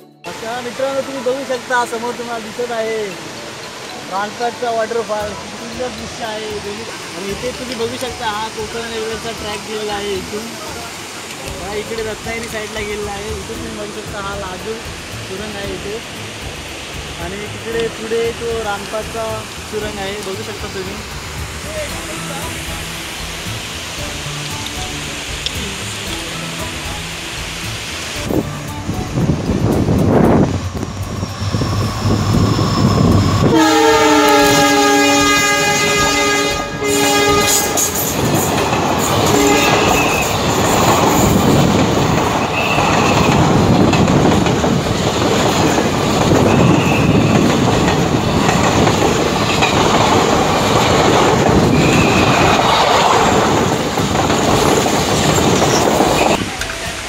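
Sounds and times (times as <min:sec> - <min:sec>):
train wheels rumbling on track: 0:00.3 - 0:57.0
train horn: 0:33.4 - 0:38.0, 0:39.3 - 0:40.3, 0:46.4 - 0:47.6, 0:51.7 - 0:52.6.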